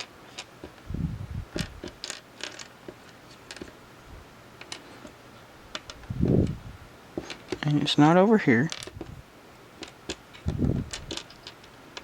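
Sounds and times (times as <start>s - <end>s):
plastic pieces clicking on table: 1.6s - 2.7s, 9.8s - 12.0s.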